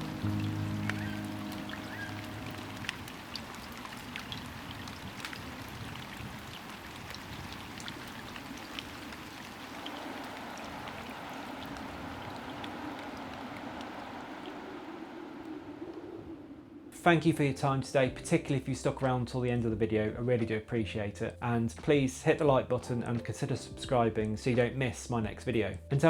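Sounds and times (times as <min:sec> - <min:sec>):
hiss of running water: 0:00.0 - 0:17.0
drip-like ticks: 0:00.2 - 0:14.8.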